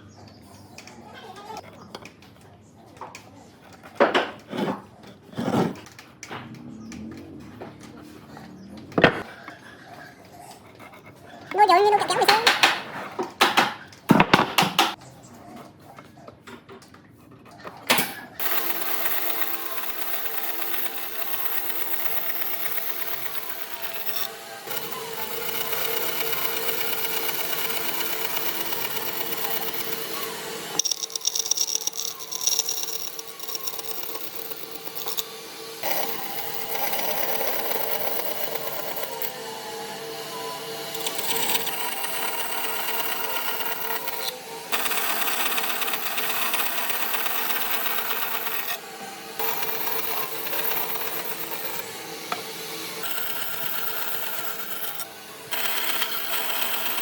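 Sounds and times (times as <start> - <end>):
electric power tool working wood: 18.4 - 57.0.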